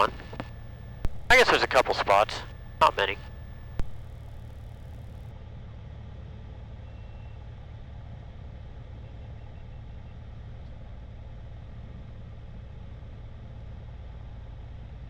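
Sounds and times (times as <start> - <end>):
aircraft piston engine humming: 0.0 - 5.2.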